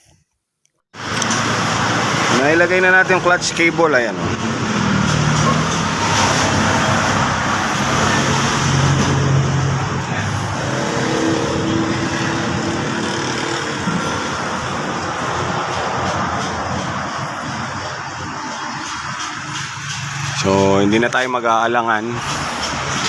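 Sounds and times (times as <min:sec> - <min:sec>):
motorcycle engine running: 0:09.7 - 0:15.1.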